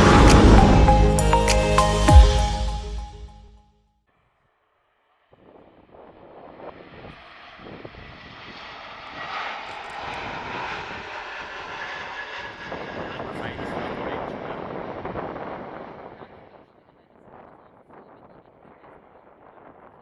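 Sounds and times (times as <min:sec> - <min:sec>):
airliner jet engine noise: 0:00.0 - 0:01.4, 0:05.9 - 0:16.7.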